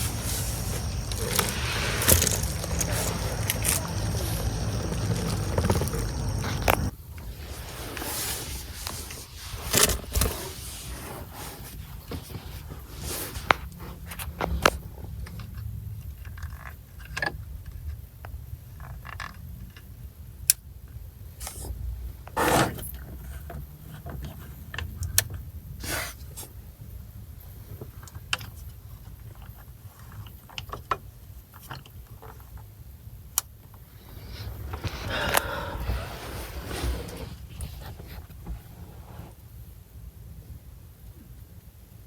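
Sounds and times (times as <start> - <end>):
low steady rumble: 0.0 - 6.9
rustling bursts: 0.0 - 6.9
small objects clicking and knocking: 0.0 - 6.9.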